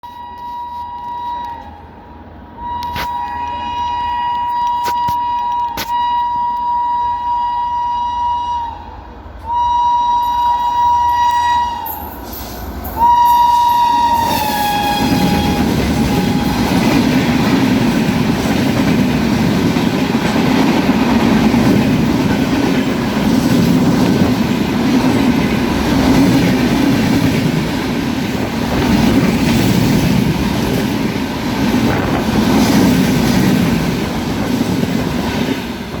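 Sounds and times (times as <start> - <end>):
locomotive horn blasts: 0.0 - 2.0, 2.6 - 12.2, 13.0 - 17.2, 19.8 - 20.8
train wheels clattering on rails: 11.1 - 36.0.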